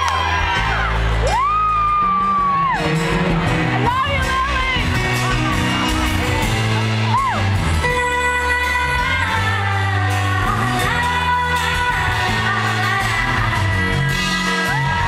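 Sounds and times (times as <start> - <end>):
live pop band playing: 0.0 - 15.0
person singing: 3.8 - 15.0.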